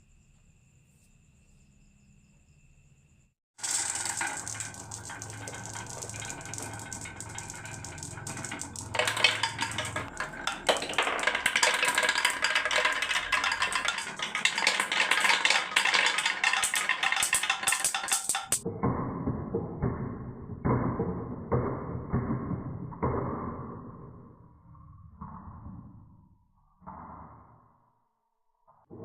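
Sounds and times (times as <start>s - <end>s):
marbles clattering down wooden run: 3.6s - 23.9s.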